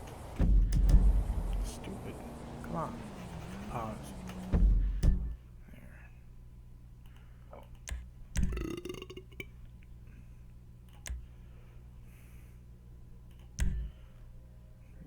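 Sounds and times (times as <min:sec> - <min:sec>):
low hum: 0:00.0 - 0:05.4
person burping: 0:08.5 - 0:09.6.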